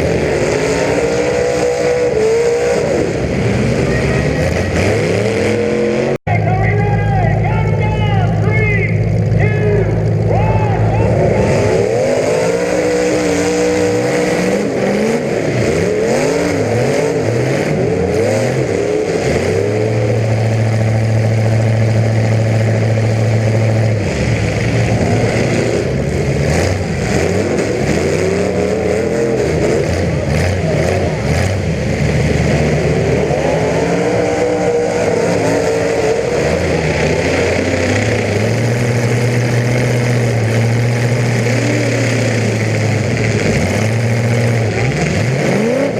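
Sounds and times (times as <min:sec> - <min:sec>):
car engines revving: 0:00.0 - 0:45.9.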